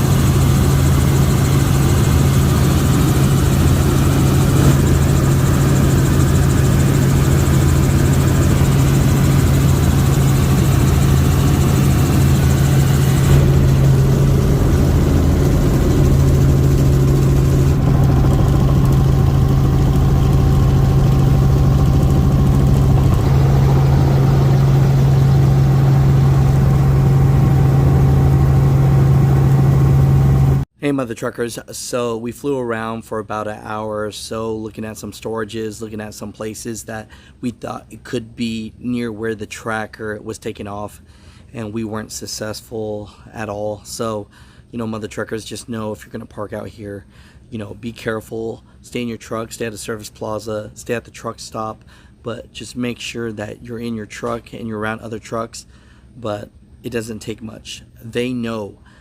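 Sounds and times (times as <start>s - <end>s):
helicopter rotor and engine drone: 0.0s - 30.6s.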